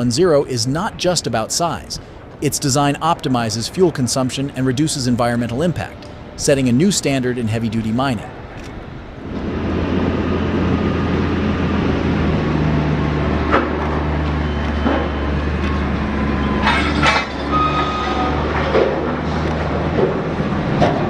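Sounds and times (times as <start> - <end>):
haul truck diesel engines droning: 0.0 - 21.0
machine squeaks and knocks: 13.5 - 20.2.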